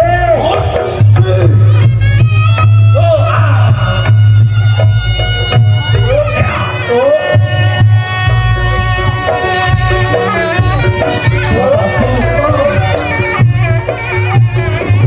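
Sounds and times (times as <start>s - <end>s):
hand drums: 0.0s - 15.0s
shawm melody: 0.0s - 15.0s.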